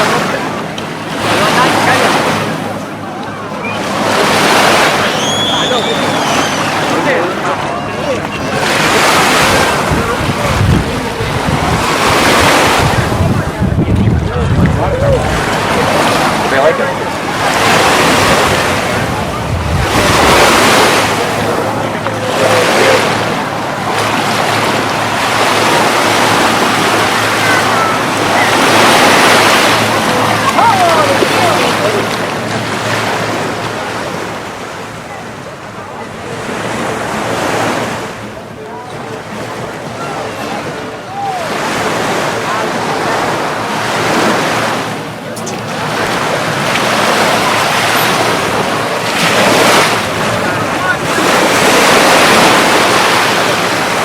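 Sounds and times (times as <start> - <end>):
ocean surf breaking on beach: 0.0 - 54.0
wind on microphone: 8.3 - 32.6.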